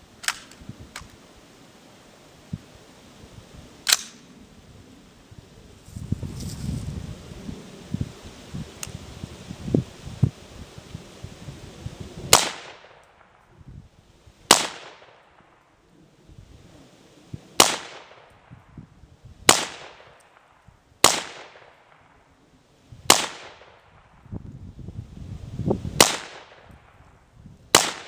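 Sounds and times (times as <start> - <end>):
rifle shots echoing: 12.3 - 13.4, 14.5 - 15.6, 17.6 - 18.5, 19.5 - 22.2, 23.1 - 24.1, 26.0 - 26.7, 27.7 - 28.0.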